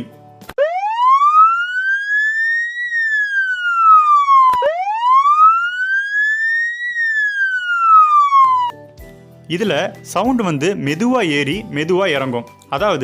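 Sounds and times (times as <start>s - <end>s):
ambulance siren wailing: 0.6s - 8.9s.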